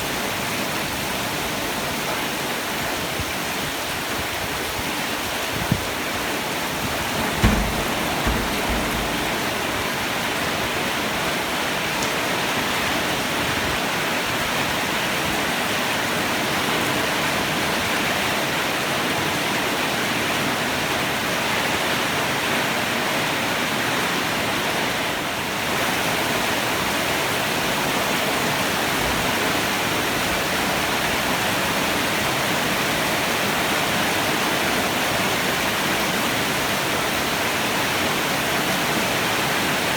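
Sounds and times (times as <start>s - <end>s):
heavy rain pouring: 5.9s - 10.6s
low thumps: 7.0s - 9.8s.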